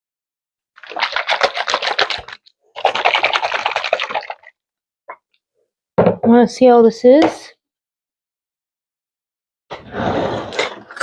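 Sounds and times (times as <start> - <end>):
salad dressing sloshing in container: 0.8 - 4.5.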